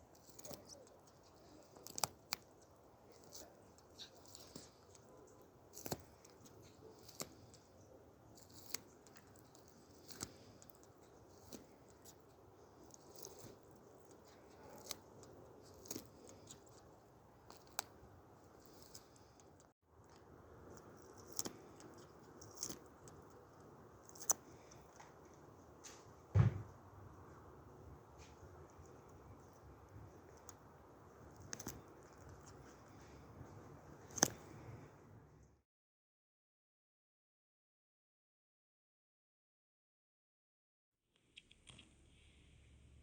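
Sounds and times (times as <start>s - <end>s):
beak tearing meat: 0.0s - 25.3s, 28.3s - 33.2s, 33.9s - 34.6s
heavy low thump: 26.3s - 26.7s.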